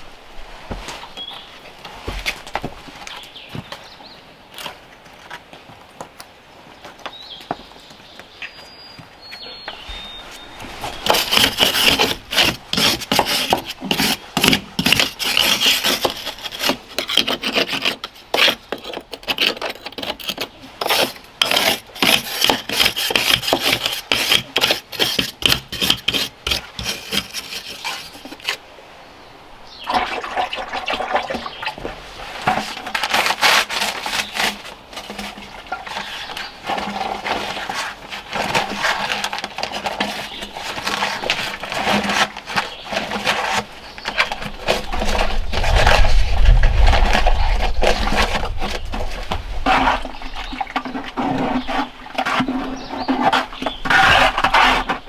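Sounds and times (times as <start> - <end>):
rapid irregular scraping: 10.6 - 28.6, 32.2 - 55.0.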